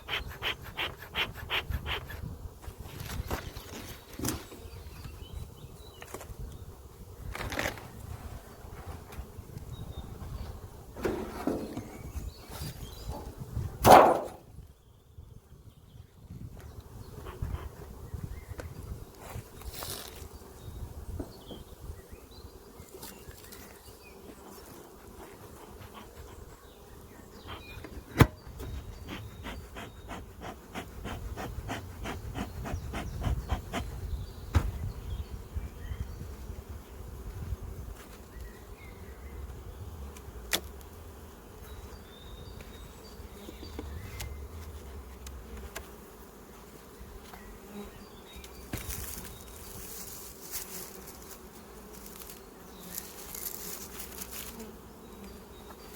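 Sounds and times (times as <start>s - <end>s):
bees buzzing: 0.0s - 5.0s, 19.0s - 35.5s, 38.6s - 55.9s
sharp knocks: 13.8s - 14.4s.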